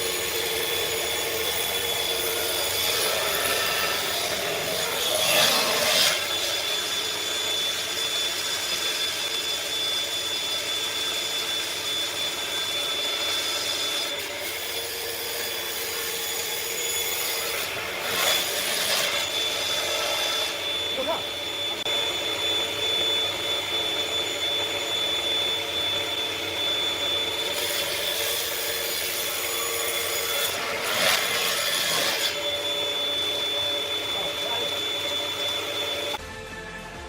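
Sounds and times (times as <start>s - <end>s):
saw blade cutting wood: 0.0s - 8.1s, 13.4s - 21.4s, 27.2s - 32.6s
table saw whining: 0.0s - 37.0s.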